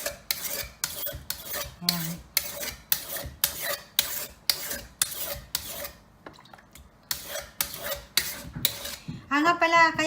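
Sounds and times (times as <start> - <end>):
knife scraping on sharpening stone: 0.0 - 6.0, 7.1 - 9.0.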